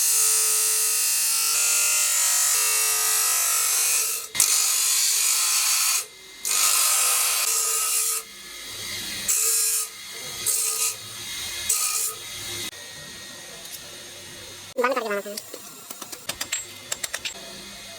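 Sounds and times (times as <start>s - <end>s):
steel grinding rasp: 1.5s - 12.7s.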